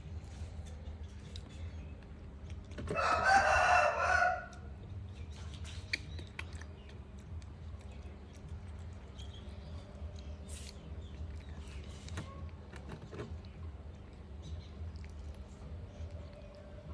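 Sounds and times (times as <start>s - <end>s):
rooster crowing: 2.9s - 4.7s.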